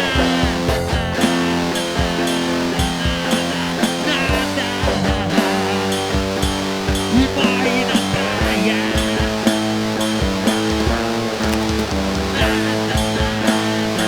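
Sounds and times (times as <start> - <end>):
rock band music: 0.0 - 14.0.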